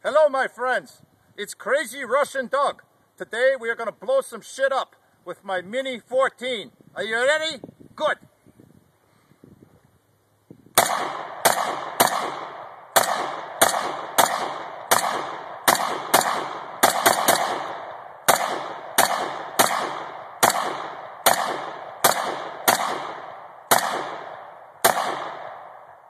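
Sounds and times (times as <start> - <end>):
rifle shots fired rapidly: 10.8 - 25.8.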